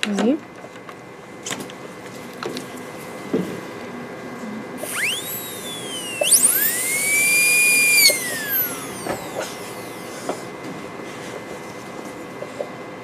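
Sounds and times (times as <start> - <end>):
dental drill whining: 4.8 - 10.5.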